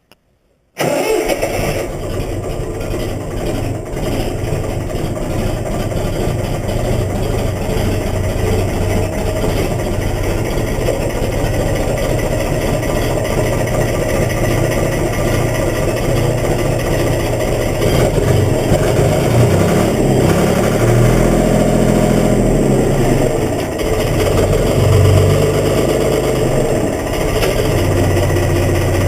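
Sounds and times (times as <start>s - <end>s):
tractor engine revving: 0.8s - 29.0s.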